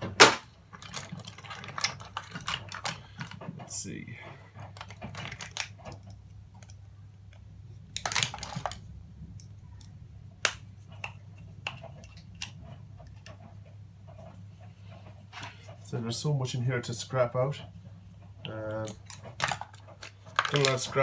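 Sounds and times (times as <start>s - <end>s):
clicks and clatters of plugs and tools: 0.0s - 3.6s, 4.6s - 7.4s, 18.8s - 21.0s.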